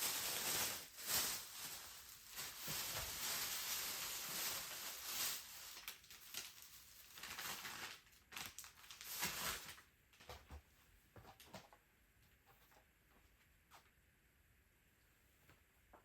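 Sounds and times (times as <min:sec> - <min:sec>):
paper or plastic rustling: 0:00.0 - 0:09.9.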